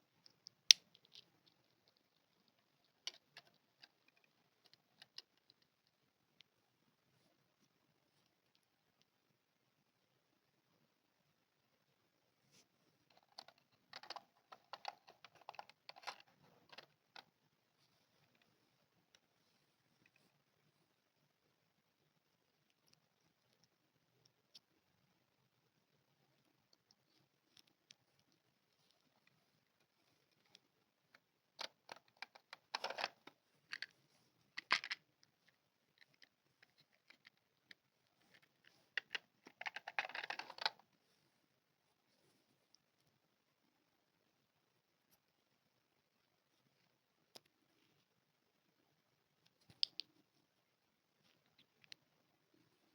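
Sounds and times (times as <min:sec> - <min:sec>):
plastic toy pieces clicking: 0:13.1 - 0:16.9, 0:31.6 - 0:33.9, 0:39.0 - 0:40.8.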